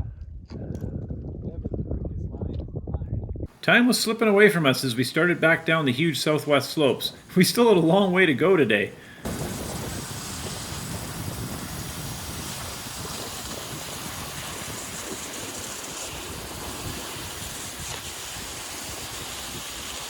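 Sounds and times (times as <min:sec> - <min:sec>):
wind buffeting microphone: 0:00.0 - 0:03.5, 0:09.0 - 0:20.0.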